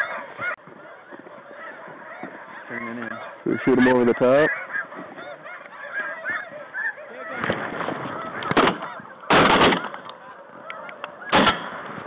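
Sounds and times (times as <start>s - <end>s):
geese honking: 0.0s - 12.0s
shotgun blasts: 8.5s - 10.0s, 11.3s - 12.0s.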